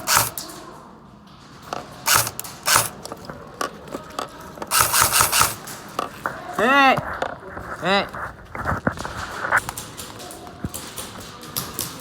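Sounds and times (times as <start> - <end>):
airsoft gun shots clacking: 0.0 - 0.4, 2.1 - 3.2, 4.7 - 5.7.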